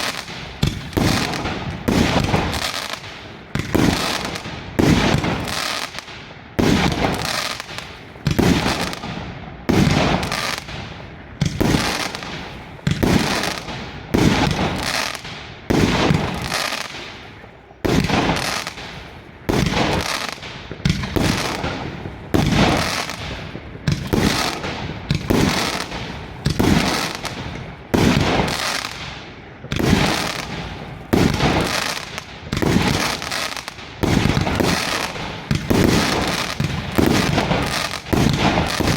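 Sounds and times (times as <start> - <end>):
firework cake bangs: 17.8 - 38.9.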